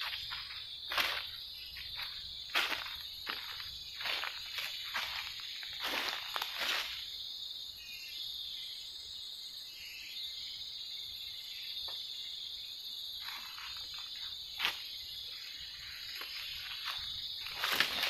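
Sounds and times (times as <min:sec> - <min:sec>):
insects droning: 0:00.0 - 0:18.0
scuffs and rustles: 0:16.2 - 0:18.0.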